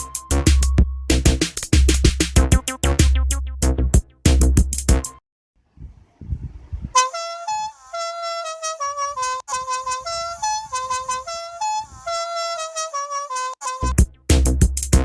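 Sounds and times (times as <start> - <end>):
musical air horn tune: 0.0 - 0.8, 7.0 - 14.1.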